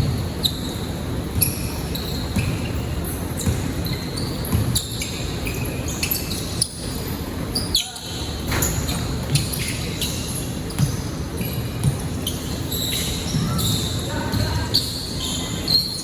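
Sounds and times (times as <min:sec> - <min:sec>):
sneakers squeaking on court: 0:00.0 - 0:16.0
basketball bouncing: 0:03.4 - 0:03.8, 0:04.4 - 0:04.9, 0:10.7 - 0:12.2.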